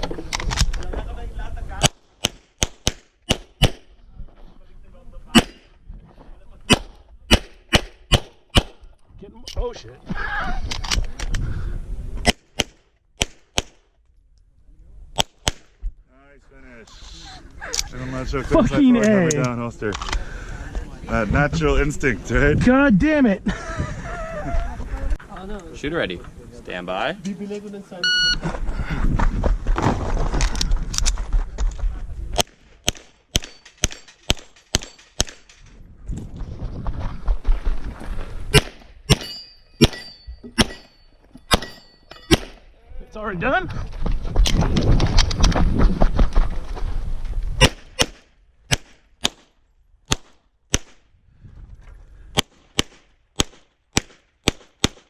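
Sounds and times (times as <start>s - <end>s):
pistol shots: 1.8s - 3.8s, 5.3s - 5.7s, 6.7s - 8.8s, 32.4s - 35.5s, 38.5s - 40.9s, 41.5s - 42.6s, 47.6s - 49.5s, 50.1s - 51.0s, 52.4s - 55.0s
steady ringing tone: 39.2s - 42.3s.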